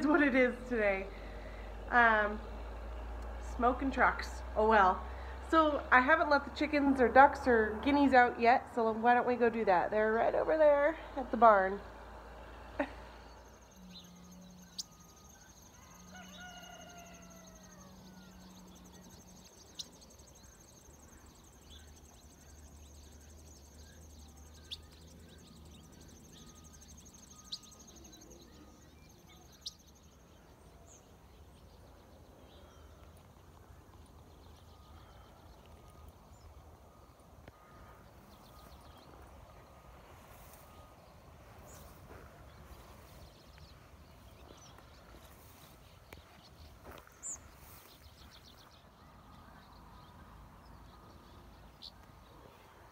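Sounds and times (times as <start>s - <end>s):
rooster crowing: 15.3s - 18.7s.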